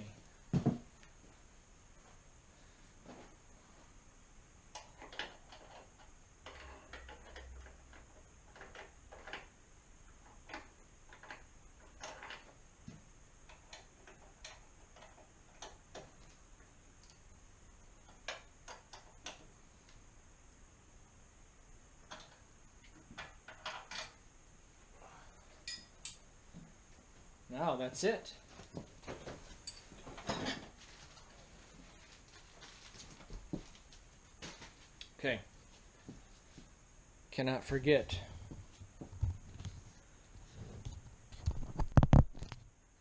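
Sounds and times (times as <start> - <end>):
light metallic clinks: 25.6 - 26.2, 29.6 - 30.5.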